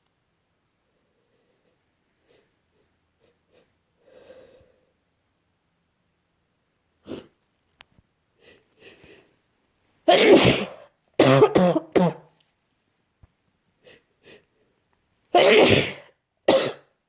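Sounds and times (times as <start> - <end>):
catching breaths: 8.4 - 9.4
person sneezing loudly: 10.1 - 12.3, 15.4 - 16.9.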